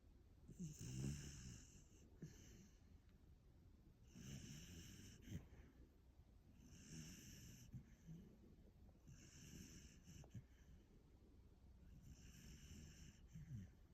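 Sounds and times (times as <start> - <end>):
puppy snoring with wheeze: 0.5 - 2.8, 4.0 - 5.7, 6.6 - 8.3, 9.0 - 10.7, 11.9 - 13.9.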